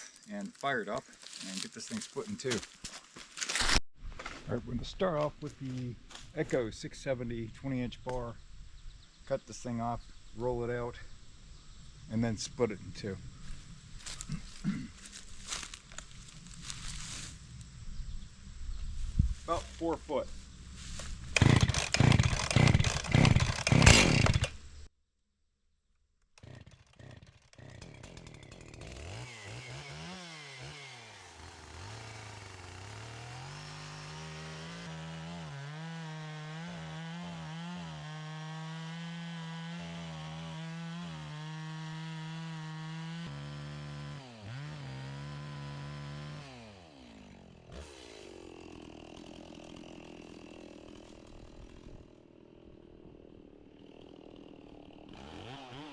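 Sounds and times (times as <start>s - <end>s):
chainsaw cutting log: 14.0s - 17.4s, 19.5s - 24.9s, 26.3s - 55.9s.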